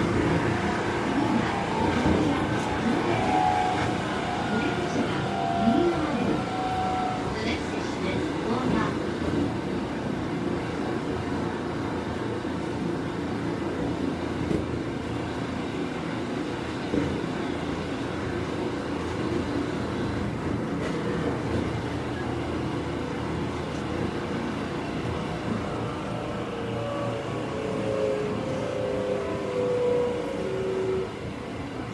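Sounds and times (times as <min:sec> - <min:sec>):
train motor and wheels running: 0:00.0 - 0:31.9.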